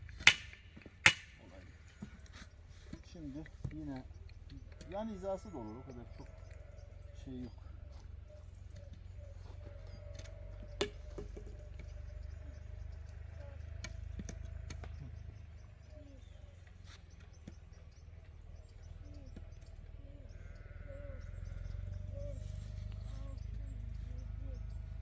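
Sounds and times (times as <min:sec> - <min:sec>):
livestock bleating faintly: 0:04.6 - 0:07.7, 0:20.1 - 0:22.4.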